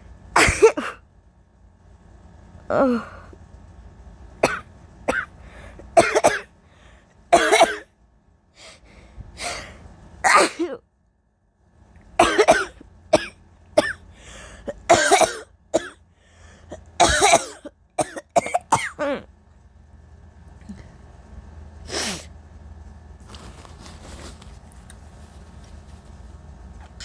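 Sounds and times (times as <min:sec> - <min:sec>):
woman coughing: 0:00.4 - 0:01.0, 0:04.4 - 0:05.3, 0:05.9 - 0:06.5, 0:07.4 - 0:07.9, 0:10.3 - 0:10.8, 0:12.2 - 0:14.0, 0:14.7 - 0:16.0, 0:16.8 - 0:19.3.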